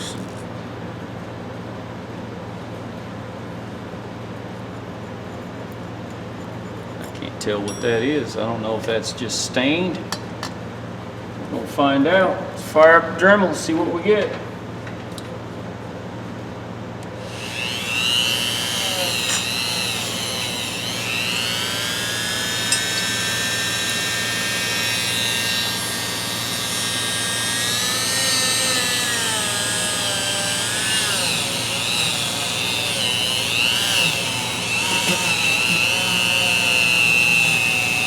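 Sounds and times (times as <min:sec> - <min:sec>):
rotary tool whining on metal: 0:00.0 - 0:00.4, 0:17.0 - 0:38.0.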